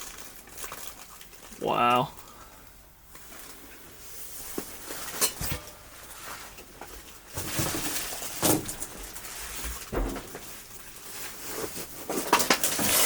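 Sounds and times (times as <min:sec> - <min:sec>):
sharp crackles and knocks: 0:03.1 - 0:13.0.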